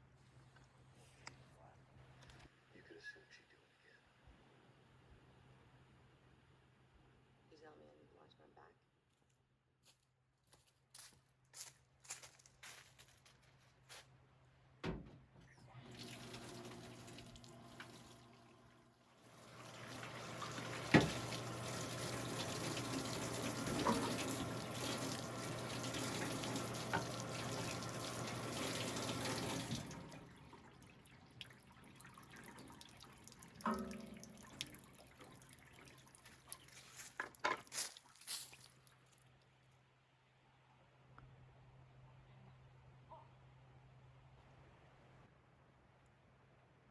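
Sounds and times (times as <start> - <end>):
water running: 15.7 - 39.0.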